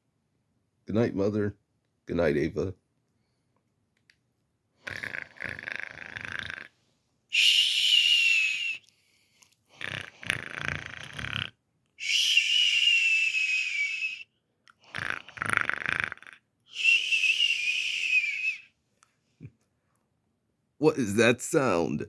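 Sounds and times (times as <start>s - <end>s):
person snoring: 4.8s - 6.8s, 9.7s - 11.6s, 14.8s - 16.4s.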